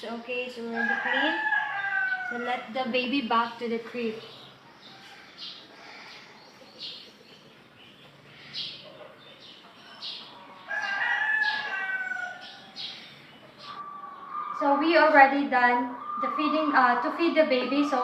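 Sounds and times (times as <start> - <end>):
rooster crowing: 0.7 - 2.7, 10.4 - 13.1, 13.7 - 15.2.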